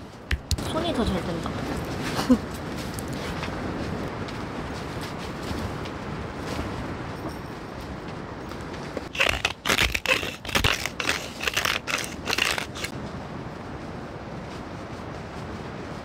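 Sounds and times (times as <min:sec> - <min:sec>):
knife scraping toasted bread: 0:09.2 - 0:12.9.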